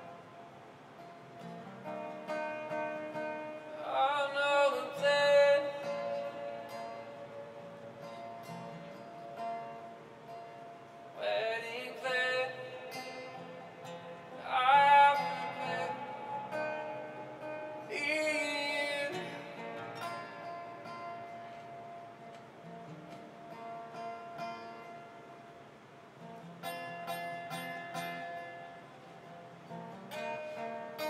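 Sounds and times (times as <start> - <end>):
acoustic guitar accompaniment: 0.0 - 31.0
person singing: 1.9 - 9.4, 11.2 - 22.1.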